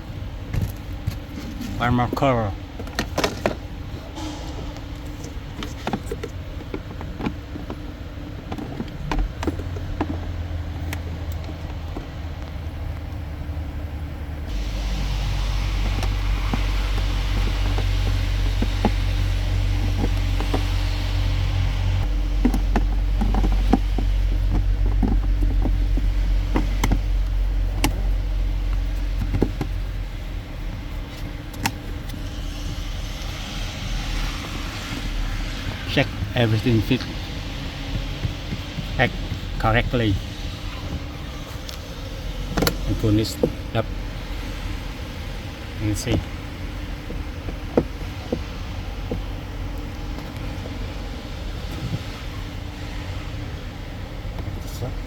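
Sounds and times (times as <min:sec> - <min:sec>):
steady low hum: 0:00.0 - 0:55.0
rushing hiss of air: 0:03.8 - 0:05.6, 0:14.5 - 0:23.6, 0:29.9 - 0:47.1.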